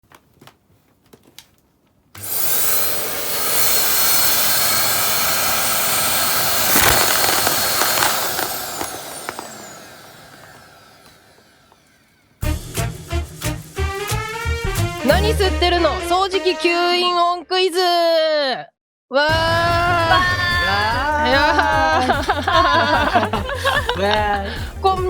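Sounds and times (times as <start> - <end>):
vacuum sucking up debris clatter: 2.2 - 11.8
vacuum cleaner running: 2.2 - 12.2, 19.3 - 24.9.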